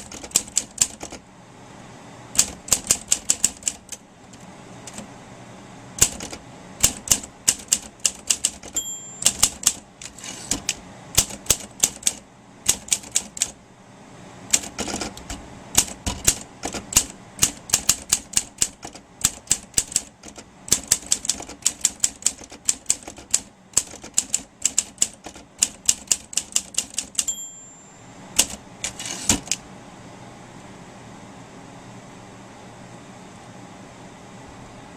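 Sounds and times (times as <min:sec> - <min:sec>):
typewriter keys striking: 0:00.0 - 0:01.2, 0:02.4 - 0:04.0, 0:06.0 - 0:13.6, 0:14.5 - 0:27.3, 0:28.4 - 0:29.6
typewriter margin bell ringing: 0:08.6 - 0:10.3, 0:27.2 - 0:27.8.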